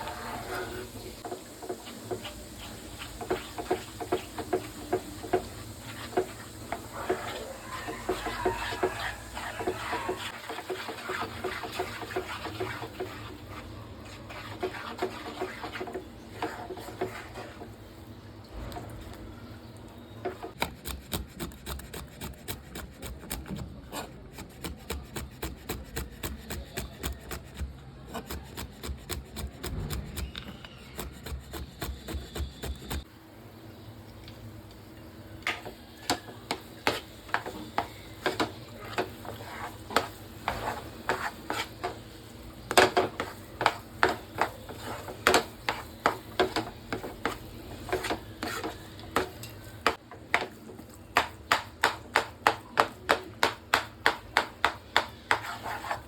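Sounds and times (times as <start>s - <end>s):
spatula scraping a pan: 0.0s - 17.9s, 35.5s - 56.0s.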